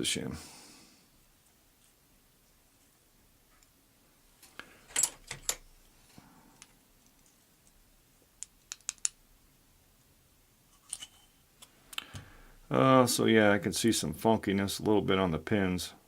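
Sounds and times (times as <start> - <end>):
small metal clicks and taps: 8.4 - 9.2.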